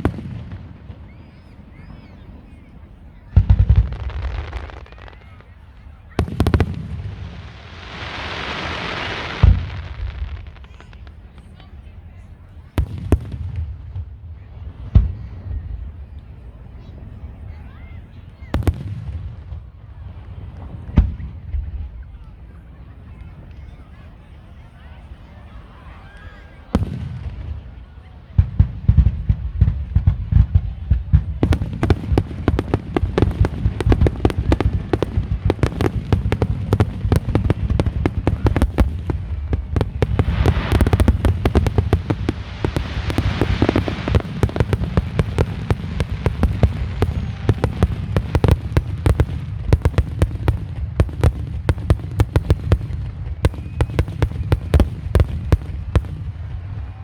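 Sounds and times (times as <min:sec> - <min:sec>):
fireworks hissing crackle: 0:00.0 - 0:13.4, 0:31.2 - 0:57.0
fireworks bursting: 0:00.0 - 0:24.7, 0:25.6 - 0:57.0.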